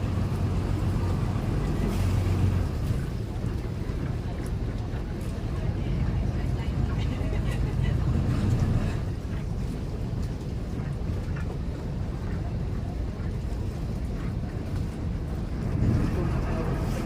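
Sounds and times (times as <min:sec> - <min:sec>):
boat engine rumbling: 0:00.0 - 0:17.0.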